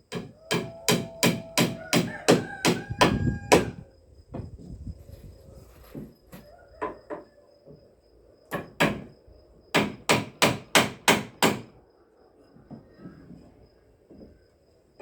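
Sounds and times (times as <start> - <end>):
hammer striking wood: 0.1 - 3.8, 8.5 - 9.1, 9.7 - 11.7.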